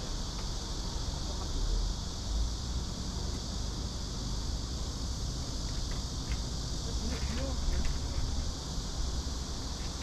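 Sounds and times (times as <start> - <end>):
insects chirring: 0.0 - 10.0.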